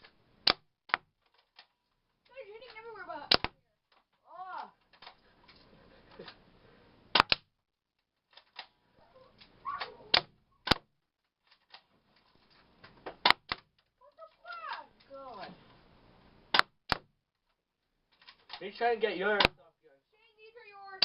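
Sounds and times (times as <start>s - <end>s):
airsoft gun shots: 3.3s - 3.6s, 7.1s - 7.5s, 9.8s - 10.9s, 13.2s - 13.6s.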